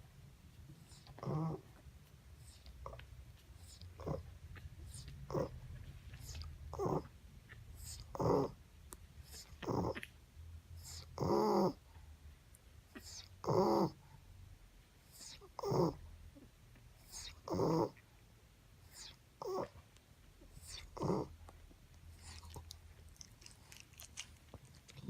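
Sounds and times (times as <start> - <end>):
dog snoring: 0.8 - 1.6, 3.6 - 4.3, 4.9 - 5.6, 6.2 - 7.1, 7.7 - 8.6, 9.2 - 10.1, 10.8 - 11.8, 12.9 - 14.0, 15.0 - 16.0, 17.0 - 18.0, 18.8 - 19.8, 20.5 - 21.4, 22.1 - 23.2.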